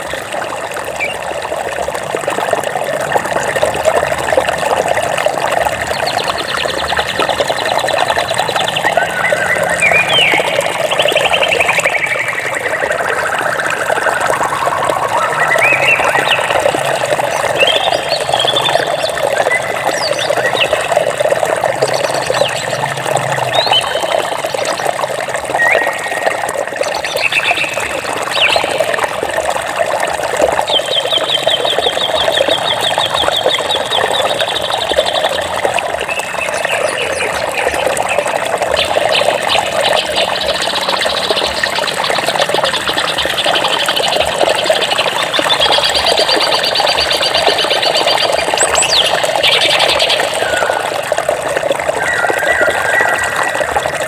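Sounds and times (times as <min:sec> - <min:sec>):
stream of water running: 0:00.0 - 0:54.0
songbirds singing: 0:03.5 - 0:29.2, 0:30.2 - 0:53.9.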